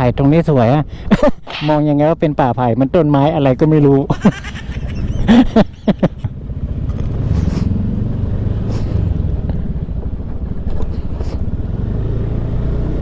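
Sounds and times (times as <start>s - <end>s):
motorcycle engine running: 4.4s - 13.0s.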